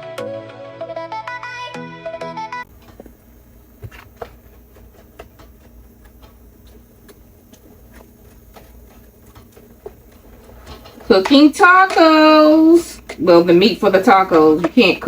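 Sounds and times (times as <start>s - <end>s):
low steady hum: 2.7s - 15.0s
kitchen utensils clicking: 3.8s - 15.0s.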